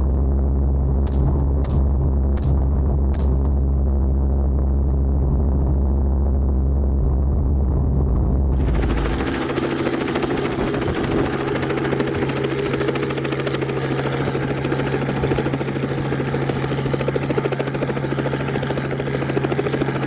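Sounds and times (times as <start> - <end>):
helicopter rotor and engine: 8.6 - 20.0.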